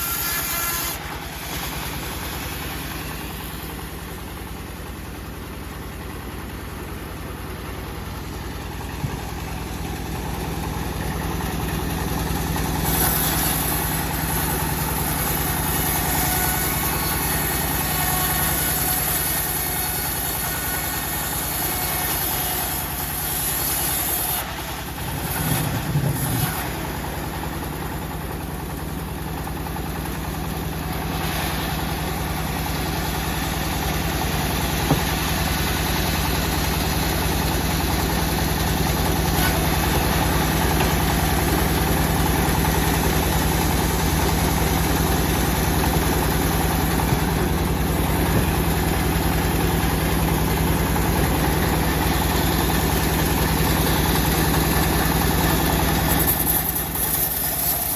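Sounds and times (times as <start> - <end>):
sawmill engine running: 0.0 - 57.9.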